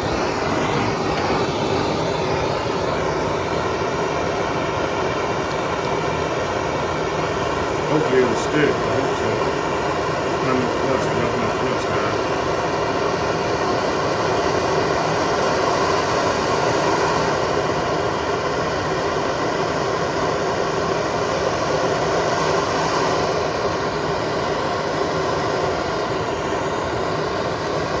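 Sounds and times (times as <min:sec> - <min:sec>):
soldering torch hissing: 0:00.0 - 0:17.6.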